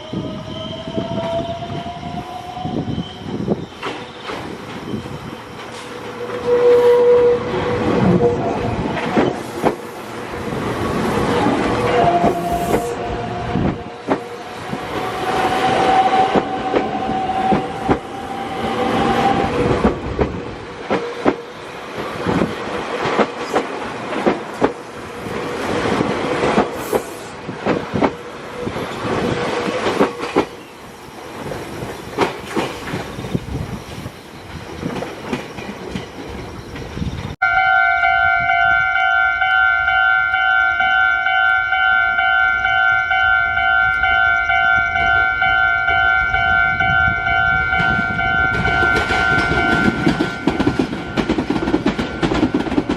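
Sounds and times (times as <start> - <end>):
train wheels clacking over rail joints: 13.7 - 30.7, 31.4 - 33.5, 47.8 - 52.9.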